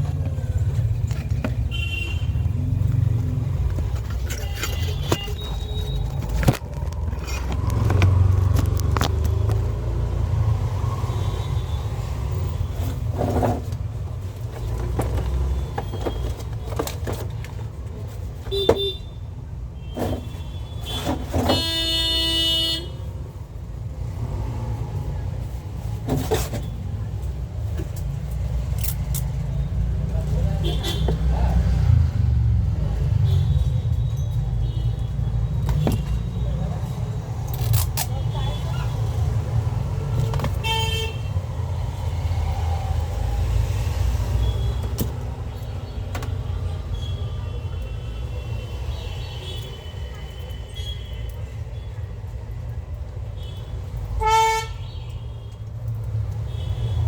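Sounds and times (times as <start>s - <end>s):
road traffic rumble: 0.0s - 57.0s
vehicle horn: 20.5s - 23.0s, 40.6s - 41.3s, 54.2s - 55.0s.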